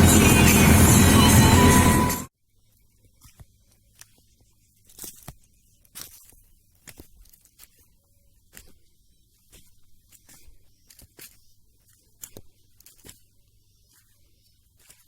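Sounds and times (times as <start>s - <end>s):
background music: 0.0s - 2.3s.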